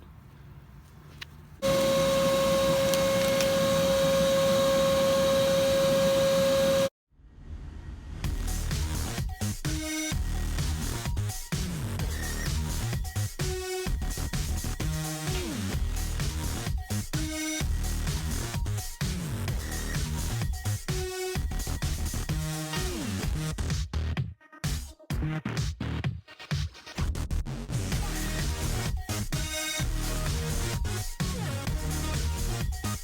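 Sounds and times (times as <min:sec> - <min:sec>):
vacuum cleaner whining: 0:01.6 - 0:06.9.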